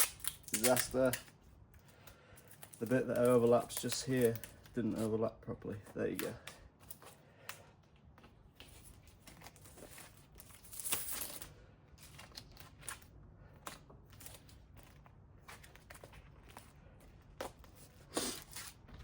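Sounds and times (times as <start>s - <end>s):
tape tearing hiss: 0.0s - 1.2s, 18.0s - 18.8s
handlebar tape crinkling: 0.0s - 19.0s.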